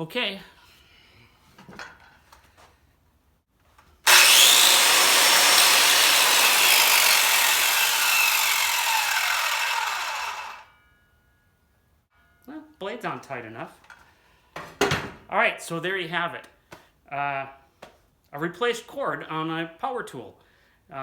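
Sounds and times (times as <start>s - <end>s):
circular saw cutting wood: 4.0s - 10.7s.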